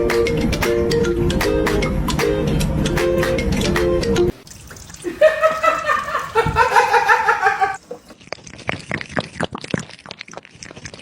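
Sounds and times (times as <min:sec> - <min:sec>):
person laughing: 0:05.0 - 0:08.2
cat lapping water: 0:07.9 - 0:11.0.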